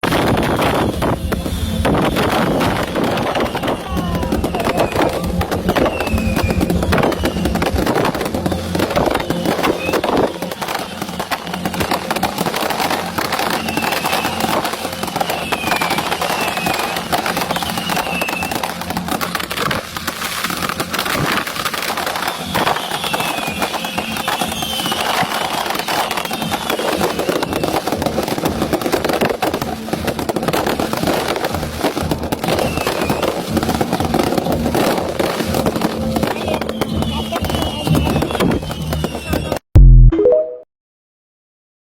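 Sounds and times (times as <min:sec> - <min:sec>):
crowd voices: 0:00.0 - 0:21.1
fireworks cracking and popping: 0:00.0 - 0:39.7
falling whistles: 0:01.5 - 0:11.8, 0:13.5 - 0:18.7, 0:22.0 - 0:27.9, 0:32.5 - 0:33.4, 0:36.2 - 0:39.6.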